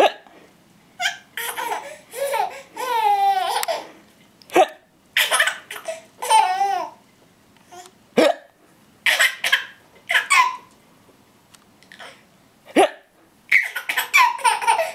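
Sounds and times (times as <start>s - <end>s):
child hiccuping: 0.0s - 0.3s, 4.5s - 5.9s, 8.2s - 8.5s, 12.7s - 14.2s
child laughing and babbling: 1.0s - 3.9s, 4.6s - 7.0s, 13.5s - 14.9s.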